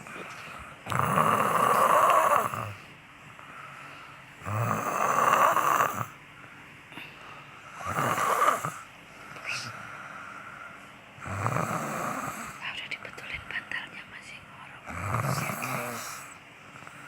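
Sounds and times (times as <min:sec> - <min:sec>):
person snoring: 0:00.9 - 0:02.8, 0:04.4 - 0:06.2, 0:07.8 - 0:08.8, 0:11.2 - 0:12.6, 0:14.9 - 0:16.4
quiet breathing: 0:01.6 - 0:04.4, 0:06.3 - 0:08.0, 0:08.7 - 0:11.2.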